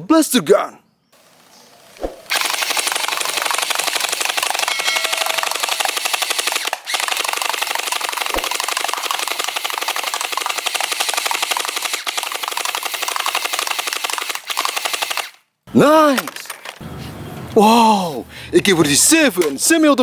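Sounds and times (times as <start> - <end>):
rapid automatic gunfire: 2.3 - 15.4.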